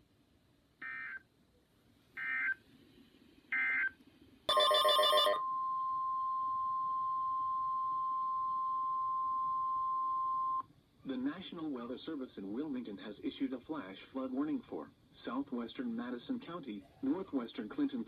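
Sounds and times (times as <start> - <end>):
steady warning alarm tone: 4.5 - 5.6.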